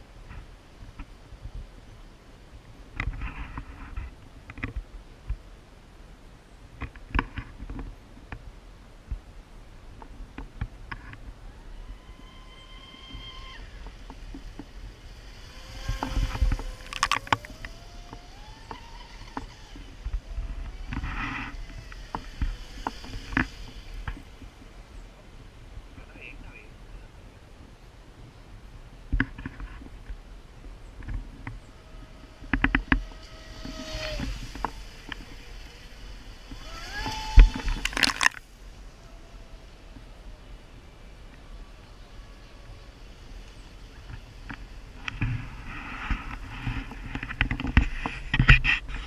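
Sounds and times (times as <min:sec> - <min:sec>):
model boat motor whining: 0:10.9 - 0:24.8, 0:30.6 - 0:49.0.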